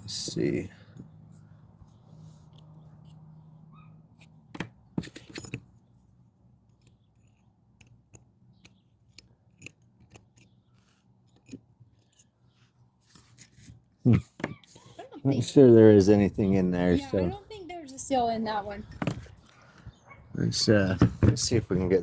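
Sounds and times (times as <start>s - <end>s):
metal tool clicking and scraping: 5.0s - 5.7s, 6.7s - 12.3s.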